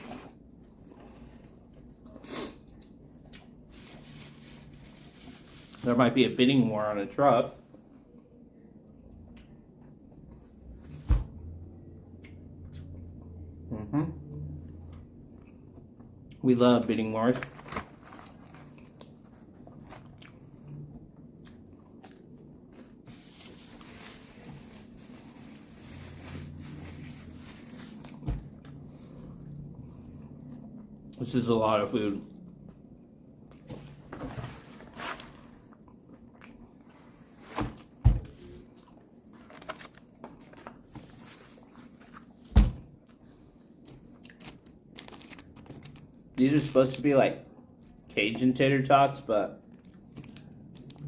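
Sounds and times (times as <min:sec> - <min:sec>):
chewing and crunching: 0:17.6 - 0:23.0, 0:43.8 - 0:48.1
person chewing crunchy food: 0:18.2 - 0:23.5.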